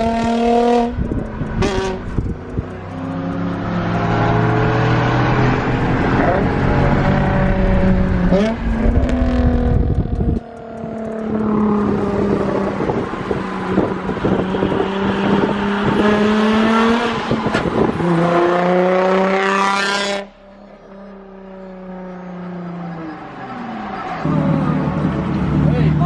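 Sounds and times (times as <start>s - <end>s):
car engine through loud exhaust: 0.0s - 26.0s.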